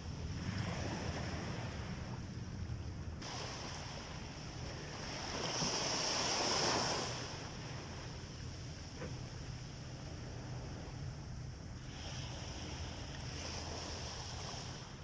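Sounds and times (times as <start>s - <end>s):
sea waves breaking on beach: 3.2s - 9.0s, 11.8s - 15.0s.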